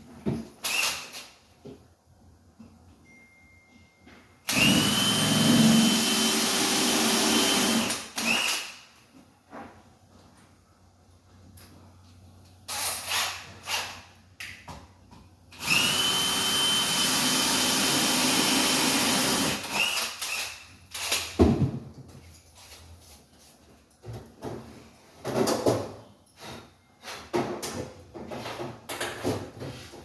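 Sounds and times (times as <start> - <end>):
power drill whining: 4.5 - 8.7, 15.6 - 21.1.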